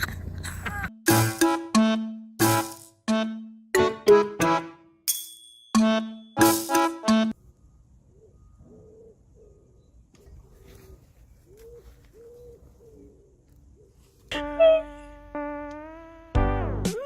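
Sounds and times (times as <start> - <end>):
bird cooing: 8.1 - 9.8, 10.4 - 14.1.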